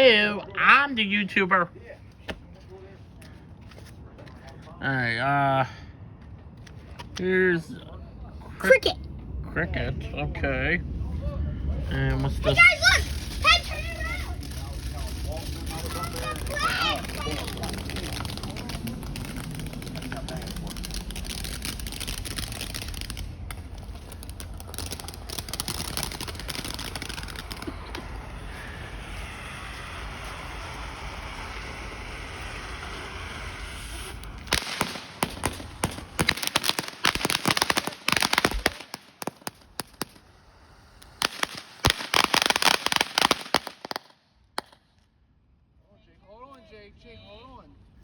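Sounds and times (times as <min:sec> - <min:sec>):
firework hissing: 0:11.6 - 0:44.8
firework crackling pops: 0:11.9 - 0:45.1.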